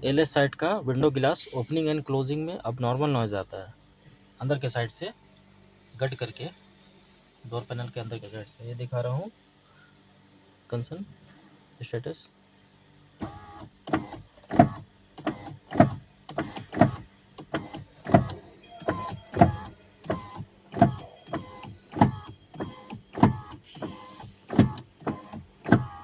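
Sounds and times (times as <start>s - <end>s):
power window running: 13.2s - 26.0s.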